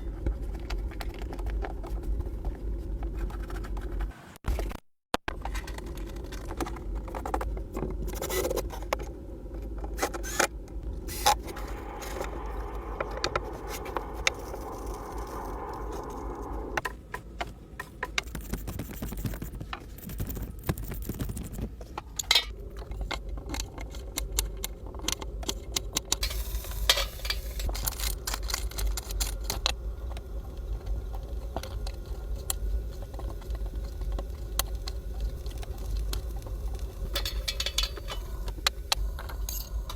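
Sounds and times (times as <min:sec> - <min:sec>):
steady low rumble: 0:10.6 - 0:16.9, 0:21.8 - 0:39.9.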